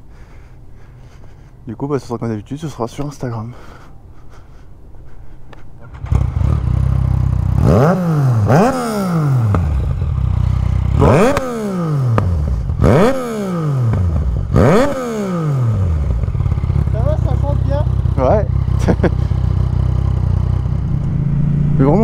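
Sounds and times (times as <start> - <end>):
motorcycle engine idling and revving: 5.8 - 22.0
motorcycle engine starting: 5.8 - 22.0.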